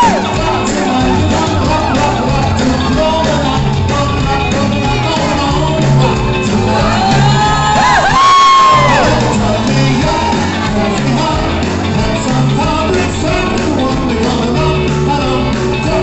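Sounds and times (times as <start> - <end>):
person whooping: 0.0 - 0.3, 6.0 - 9.3
rock and roll song: 0.0 - 16.0.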